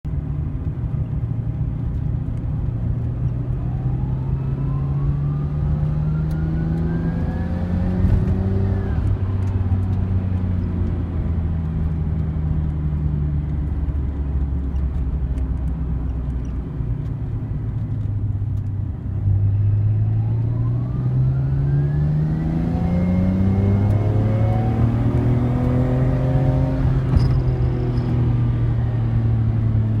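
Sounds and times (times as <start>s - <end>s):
car engine revving: 19.8s - 29.6s.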